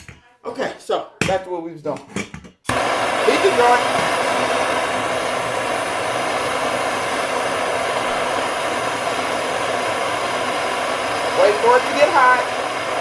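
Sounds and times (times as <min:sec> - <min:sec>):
gas torch hissing: 0:02.7 - 0:13.0.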